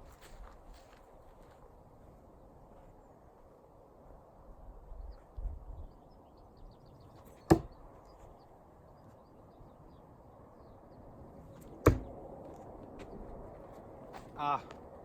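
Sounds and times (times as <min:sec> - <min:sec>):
knife thunk into wood: 0:07.5 - 0:07.7, 0:11.9 - 0:12.1.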